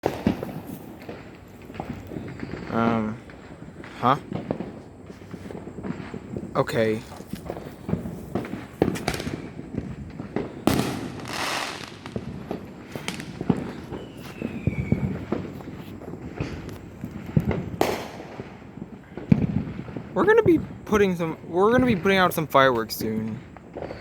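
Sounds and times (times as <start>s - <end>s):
firework hissing burst: 0.0s - 20.2s
firecracker bangs and crackles: 0.0s - 24.0s
falling firework whistle: 8.5s - 9.8s, 10.4s - 18.4s, 23.7s - 24.0s.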